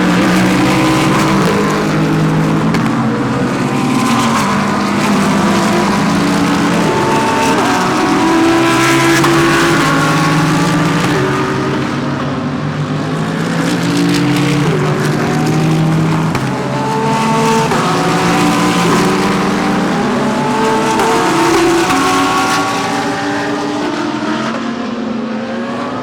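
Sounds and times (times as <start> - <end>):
race car engines shifting gears: 0.0 - 24.9.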